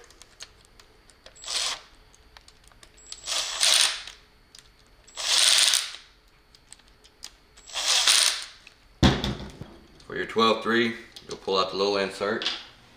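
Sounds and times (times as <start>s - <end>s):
impact driver driving screws: 7.7s - 8.5s.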